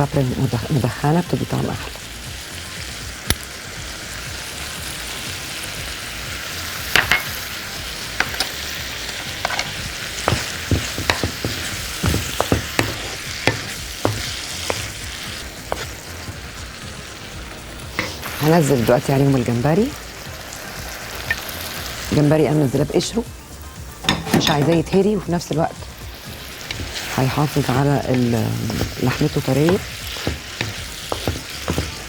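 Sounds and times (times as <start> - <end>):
food sizzling in oil: 0.0 - 32.0
spoon scraping a pan: 8.2 - 16.4, 17.9 - 18.4, 26.4 - 32.0.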